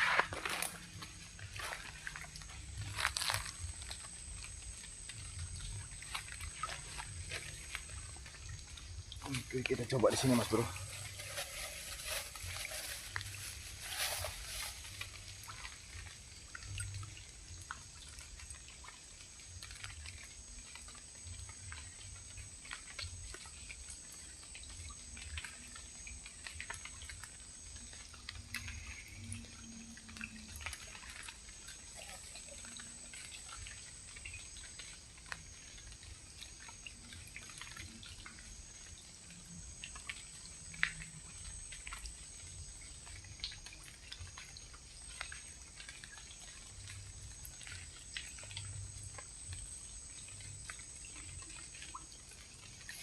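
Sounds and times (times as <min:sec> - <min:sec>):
water trickling and dripping: 0:00.0 - 0:53.0.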